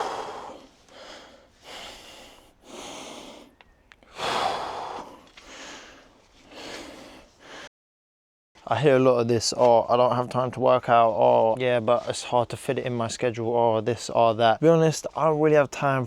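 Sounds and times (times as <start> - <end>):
man breathing hard: 0.0 - 7.7.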